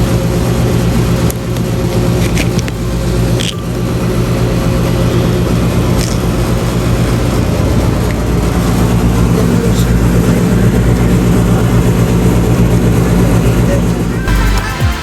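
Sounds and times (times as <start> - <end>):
dryer drum rumbling: 0.0 - 14.3
clothes dryer motor hum: 0.0 - 14.4.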